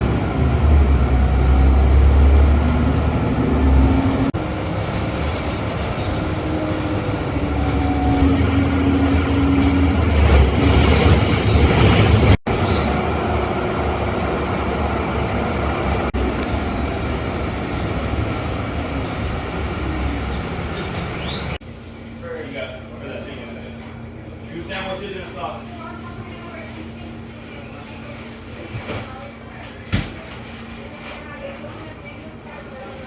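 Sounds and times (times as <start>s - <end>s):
bus engine and road rumble: 0.0s - 21.6s.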